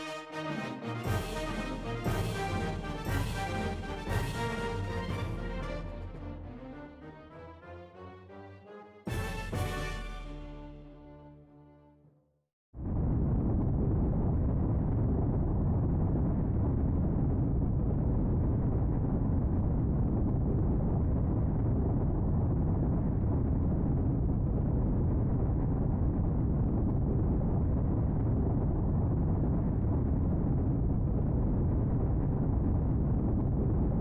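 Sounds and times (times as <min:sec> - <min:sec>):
loud steady rumbling: 0:01.0 - 0:06.7.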